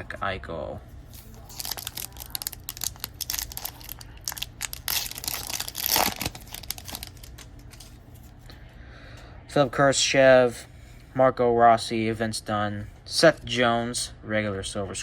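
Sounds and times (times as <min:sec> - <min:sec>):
wrapper tearing and crinkling: 0:01.1 - 0:08.0.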